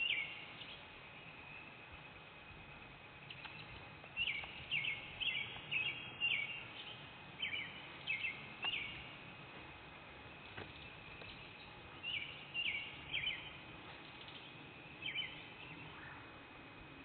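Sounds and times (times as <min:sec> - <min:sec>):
songbird chirping: 0:00.0 - 0:17.0.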